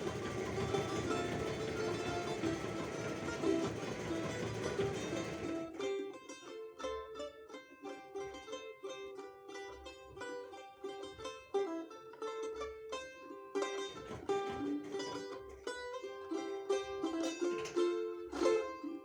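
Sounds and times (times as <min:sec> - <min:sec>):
balalaika plucked melody: 0:00.0 - 0:19.0.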